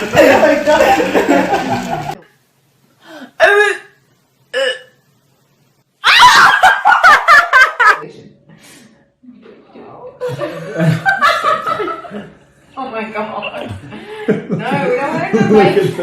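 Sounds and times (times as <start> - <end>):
person crying out: 6.0 - 6.7.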